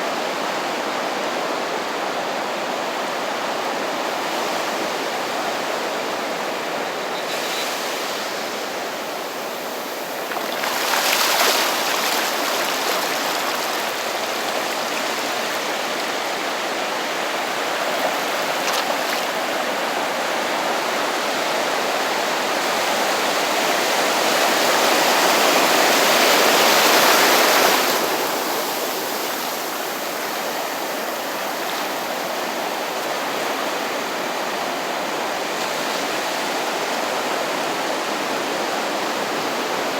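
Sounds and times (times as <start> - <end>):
ocean waves breaking: 7.4 - 21.0.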